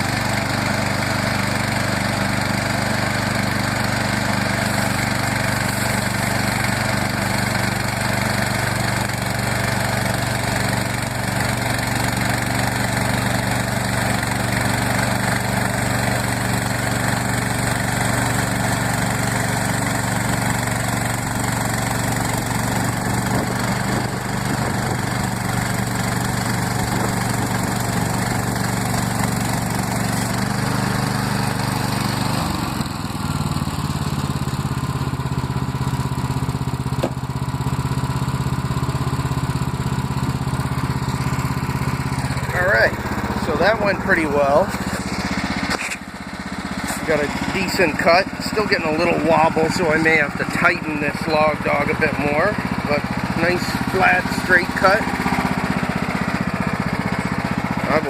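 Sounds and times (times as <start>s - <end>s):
sawmill engine running: 0.0s - 58.0s
band blade cutting log: 4.4s - 13.8s, 14.4s - 32.8s, 42.2s - 52.2s.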